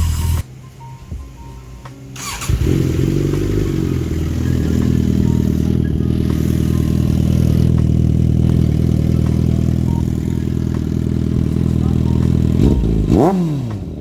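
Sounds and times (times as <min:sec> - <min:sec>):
motorcycle engine stopping: 0:00.0 - 0:00.4, 0:02.1 - 0:14.0
motorcycle engine starting and idling: 0:00.0 - 0:14.0.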